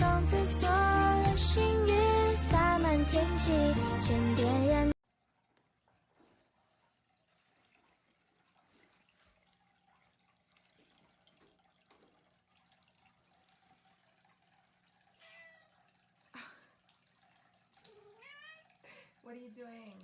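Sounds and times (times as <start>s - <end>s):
cat meowing faintly: 15.2s - 15.8s, 18.0s - 18.8s.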